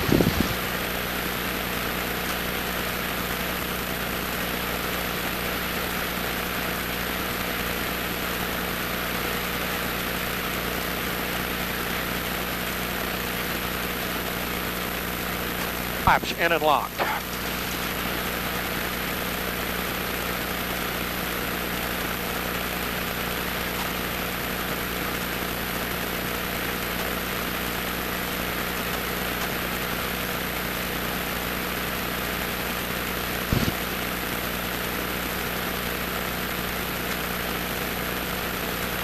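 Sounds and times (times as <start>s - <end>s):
light aircraft engine drone: 0.0s - 35.8s.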